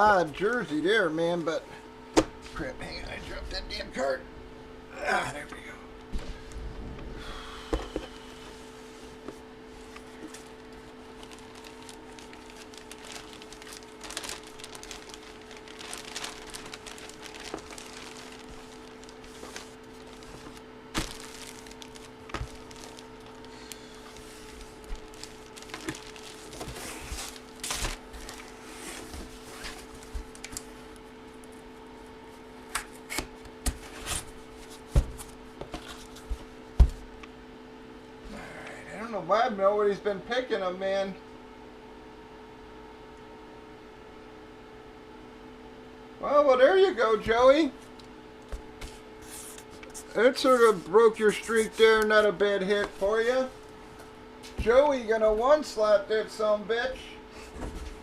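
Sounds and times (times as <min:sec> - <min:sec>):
low electrical hum: 0:00.0 - 0:58.0
plastic packaging crinkling: 0:10.0 - 0:31.5.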